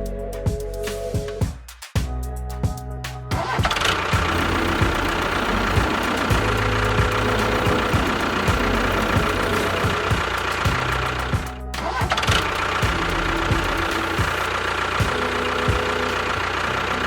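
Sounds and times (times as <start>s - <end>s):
small engine running with a whine: 3.8s - 17.0s.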